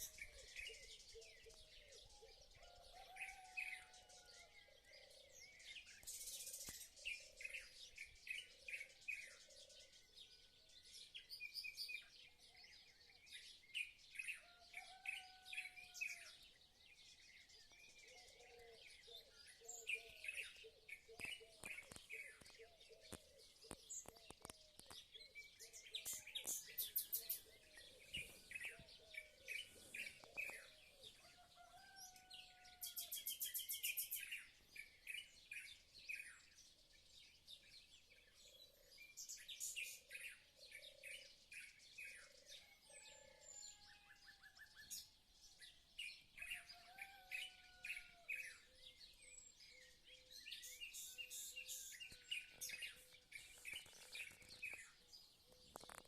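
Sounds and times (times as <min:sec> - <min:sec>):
birds chirping: 0:17.6 - 0:32.2, 0:46.6 - 0:56.0.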